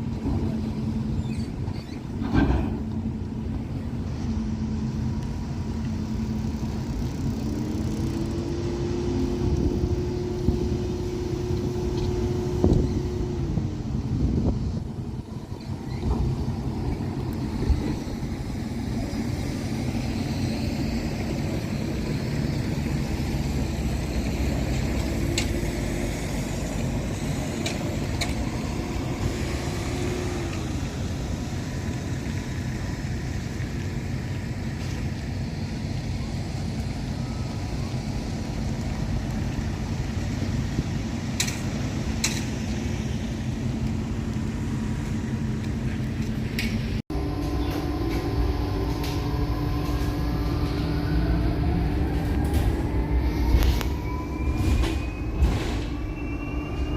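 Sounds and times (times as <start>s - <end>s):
vehicle rumbling in motion: 0.0s - 56.9s
faint whine: 42.7s - 56.9s.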